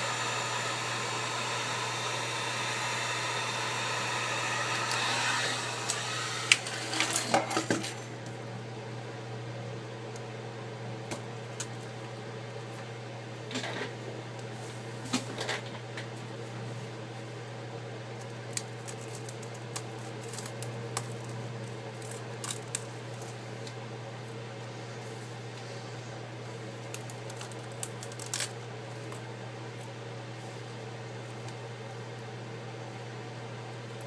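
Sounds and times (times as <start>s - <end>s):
heat gun blowing: 0.0s - 7.5s.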